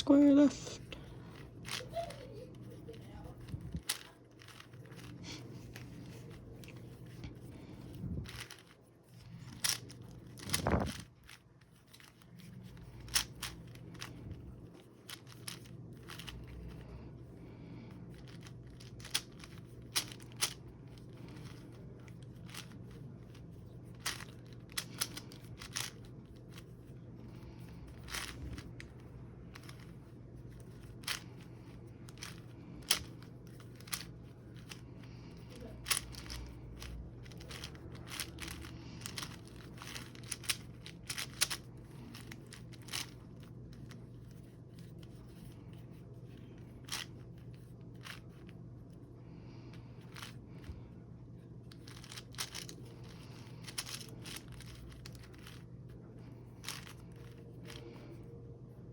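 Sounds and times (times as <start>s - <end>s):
faint steady hum: 0.0s - 58.9s
puzzle cube clicking: 9.5s - 14.2s, 18.2s - 20.6s, 23.9s - 26.6s, 35.5s - 43.2s.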